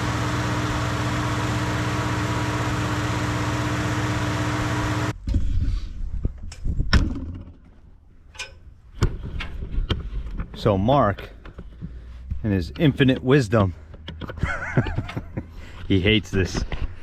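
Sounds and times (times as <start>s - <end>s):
engine idling: 0.0s - 5.1s.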